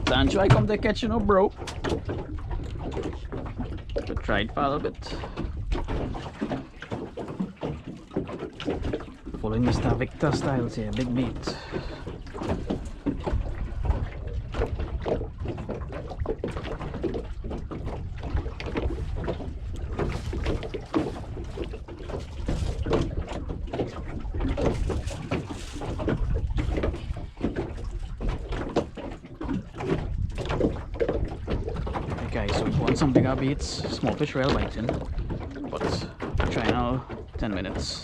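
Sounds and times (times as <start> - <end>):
boat engine low rumble: 0.0 - 38.0
water slapping against hull: 0.0 - 38.0.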